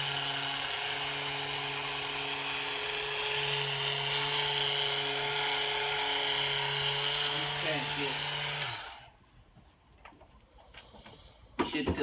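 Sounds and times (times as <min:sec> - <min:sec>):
vibration device buzzing: 0:00.0 - 0:09.0.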